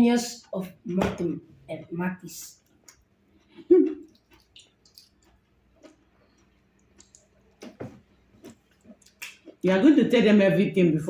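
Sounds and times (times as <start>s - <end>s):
chewing mouth smacks: 2.8s - 7.8s, 8.4s - 9.6s.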